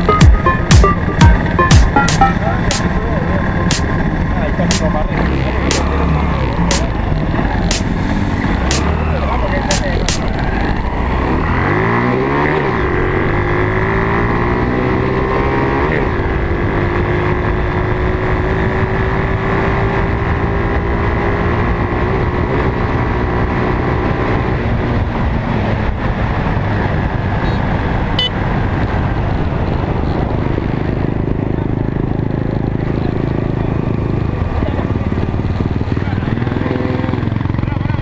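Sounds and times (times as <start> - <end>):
off-road vehicle engine revving: 3.4 - 24.5.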